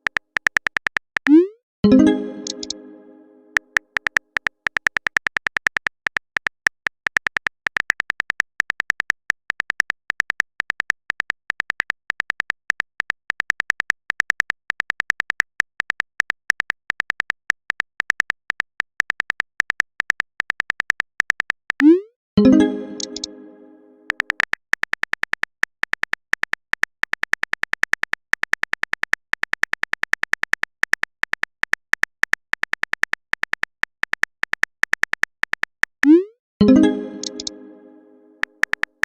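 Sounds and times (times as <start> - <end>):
keyboard key clicks: 2.4 - 2.8, 22.9 - 23.3, 37.1 - 37.6.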